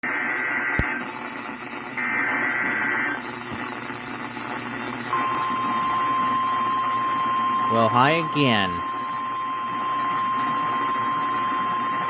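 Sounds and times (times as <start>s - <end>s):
radio static: 0.1s - 6.1s, 7.7s - 8.8s.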